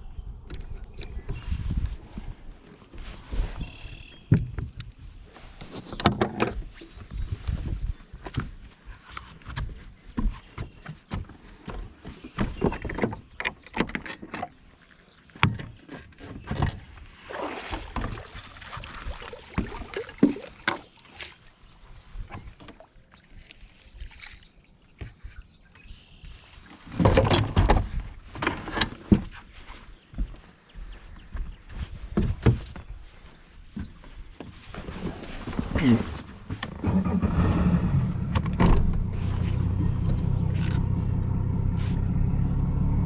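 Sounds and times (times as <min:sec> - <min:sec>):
knocks and clunks of gear: 0:08.2 - 0:14.6, 0:15.4 - 0:16.8, 0:26.7 - 0:29.4, 0:38.2 - 0:41.4.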